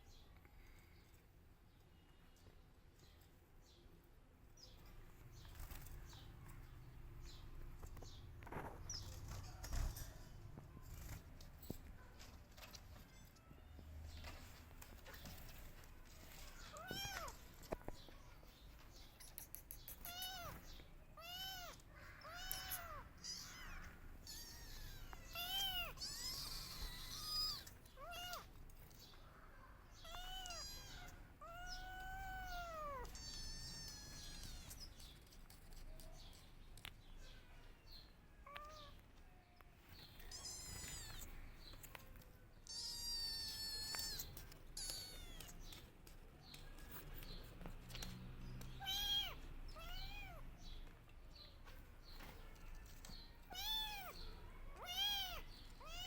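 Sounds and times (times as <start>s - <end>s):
kittens meowing: 16.4s - 17.4s, 20.0s - 28.6s, 29.9s - 35.0s, 40.1s - 41.4s, 42.6s - 45.8s, 48.8s - 50.5s, 53.4s - 56.0s.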